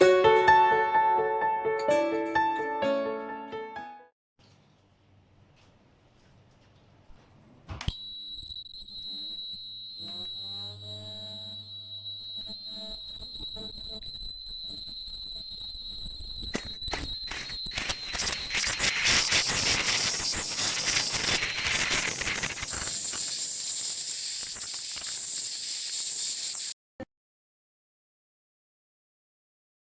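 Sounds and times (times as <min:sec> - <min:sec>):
ultrasonic welder high-pitched whine: 0:07.9 - 0:26.8
loud crackling hiss: 0:17.9 - 0:26.8.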